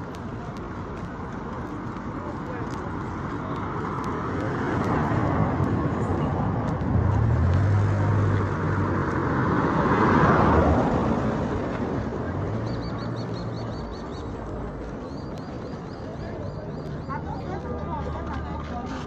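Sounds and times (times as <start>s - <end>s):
steady road noise: 0.0s - 19.0s
vehicle engine hum: 0.0s - 19.0s
vehicle passing close: 4.4s - 13.8s.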